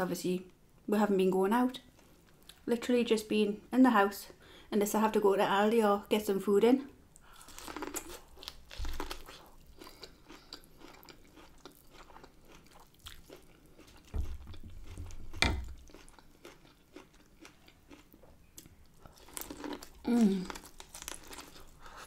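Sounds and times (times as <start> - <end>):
person chewing food: 7.2 - 22.0
dull low thumps: 14.1 - 15.7.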